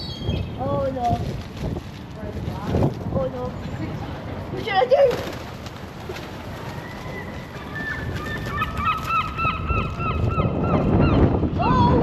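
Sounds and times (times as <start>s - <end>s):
low wind rumble on microphone: 0.0s - 12.0s
large birds honking squawks: 3.8s - 11.4s.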